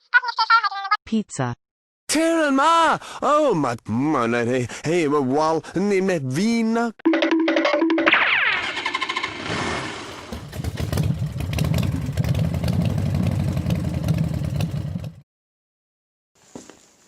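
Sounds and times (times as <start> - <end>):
engine running with pulsing beat: 10.3 - 15.2.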